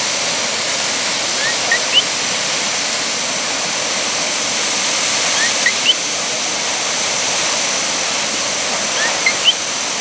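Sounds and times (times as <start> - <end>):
waterfall rushing: 0.0 - 10.0
bird chirps: 1.4 - 2.1, 5.4 - 6.0, 9.0 - 9.6.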